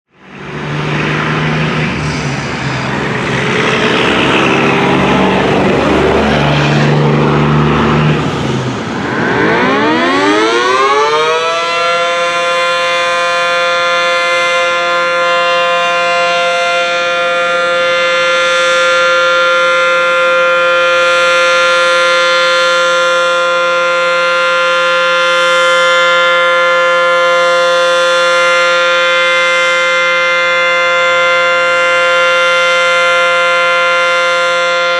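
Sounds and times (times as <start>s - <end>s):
loud rushing noise: 0.1s - 11.4s
two-tone warning siren: 0.1s - 34.9s.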